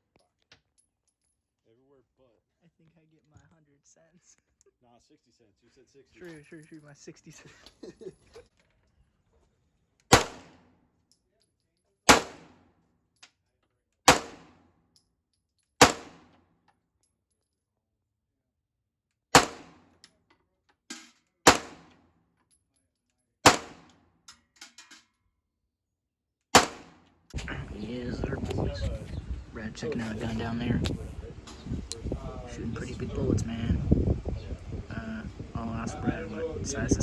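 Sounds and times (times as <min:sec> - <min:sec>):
gunshots: 0:10.1 - 0:10.6, 0:12.1 - 0:12.6, 0:14.1 - 0:14.6, 0:15.8 - 0:16.3, 0:19.4 - 0:19.9, 0:21.5 - 0:21.9, 0:23.4 - 0:23.9, 0:26.6 - 0:27.0.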